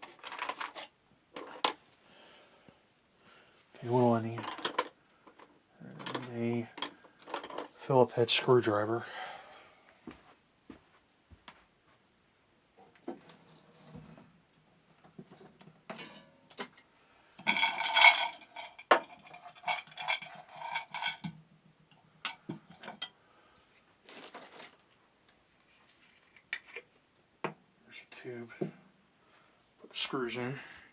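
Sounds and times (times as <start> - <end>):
metal hand tools clattering: 15.9 - 16.8, 17.4 - 21.3.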